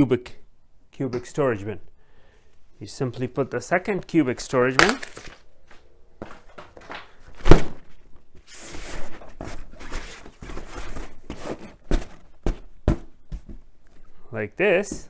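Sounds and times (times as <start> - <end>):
storage bin thunk: 7.4 - 7.8
storage bin scraping rustle: 7.5 - 12.4.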